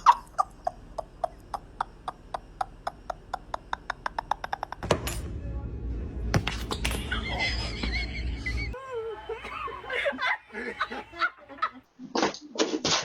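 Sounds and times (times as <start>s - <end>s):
low rumbling noise: 4.8s - 8.8s.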